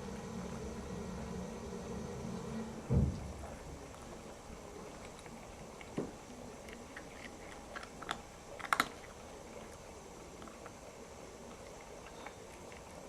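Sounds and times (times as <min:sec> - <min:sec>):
cat chewing crunchy food: 0:03.4 - 0:13.0.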